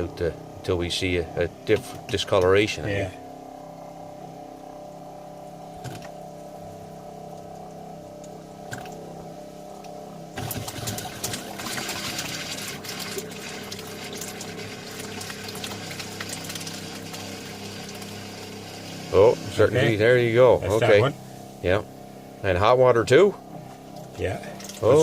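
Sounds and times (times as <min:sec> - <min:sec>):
water pump humming: 0:00.0 - 0:25.0
water running into sink: 0:10.4 - 0:19.1.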